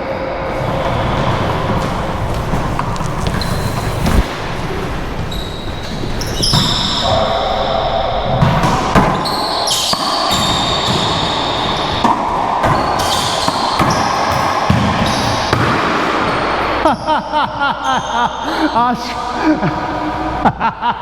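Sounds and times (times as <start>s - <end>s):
sneaker squeaks on court floor: 0.5s - 16.0s.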